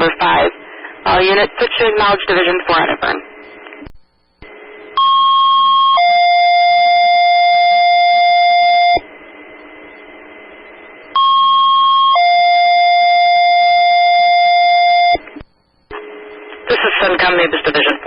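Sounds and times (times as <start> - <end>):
radio hiss: 0.0 - 5.0, 15.2 - 18.0.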